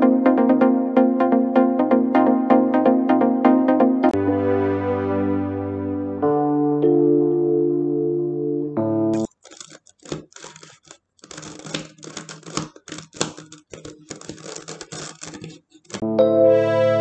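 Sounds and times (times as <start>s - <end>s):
puzzle cube clicking as turned: 9.2s - 16.0s.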